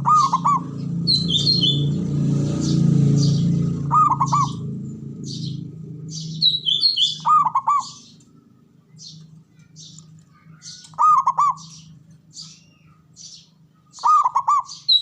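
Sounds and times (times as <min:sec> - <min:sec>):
dove cooing: 0:00.0 - 0:01.9, 0:02.7 - 0:05.5, 0:06.2 - 0:08.2, 0:10.8 - 0:11.9, 0:14.0 - 0:15.0
high-pitched bird chirps: 0:00.0 - 0:15.0.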